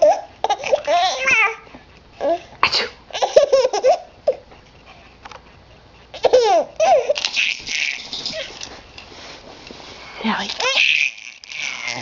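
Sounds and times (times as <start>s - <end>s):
baby laughing: 0.0s - 1.6s, 3.1s - 4.4s, 6.1s - 8.5s, 10.6s - 12.0s.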